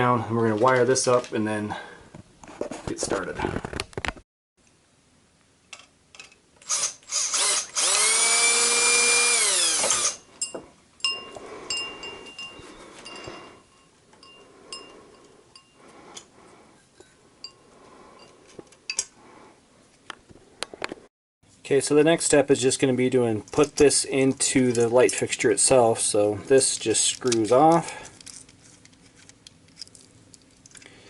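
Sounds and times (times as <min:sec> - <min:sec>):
power drill whining: 0:06.6 - 0:10.3.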